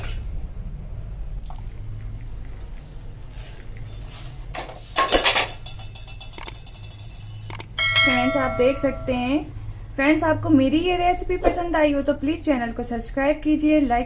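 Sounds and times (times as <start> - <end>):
pan and utensils clattering: 4.8 - 9.1.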